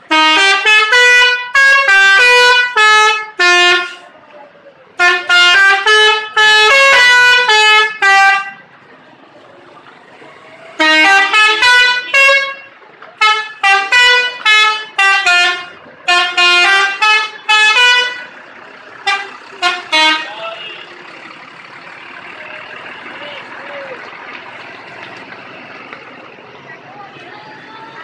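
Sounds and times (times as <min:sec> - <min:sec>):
musical bus air horn honking: 0:00.0 - 0:04.1, 0:05.0 - 0:08.6, 0:10.8 - 0:18.4, 0:19.0 - 0:20.9
steady background noise: 0:00.0 - 0:28.0.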